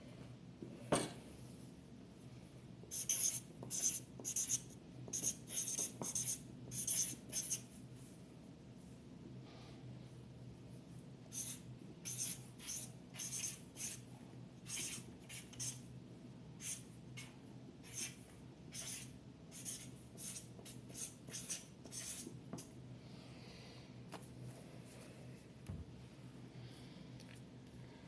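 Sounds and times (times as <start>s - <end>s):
low room hum: 0.0s - 28.0s
pen scratching while handwriting: 2.9s - 7.6s, 11.3s - 14.0s, 14.7s - 15.8s, 16.6s - 22.3s.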